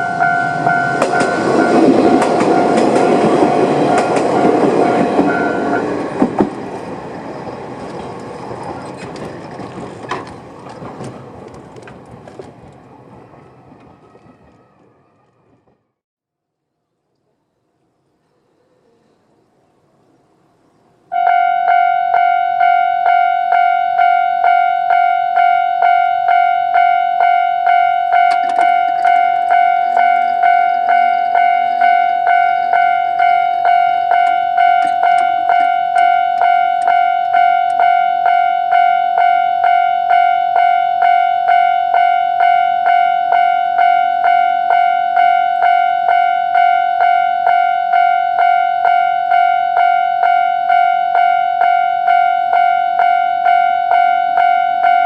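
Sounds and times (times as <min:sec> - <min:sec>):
level crossing warning alarm: 0:00.0 - 0:07.8, 0:21.1 - 0:55.0.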